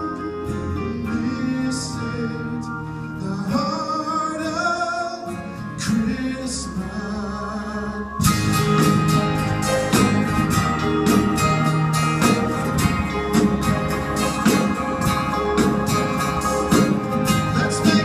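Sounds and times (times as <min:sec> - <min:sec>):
band music: 0:00.0 - 0:18.0
guitar solo: 0:08.0 - 0:18.0.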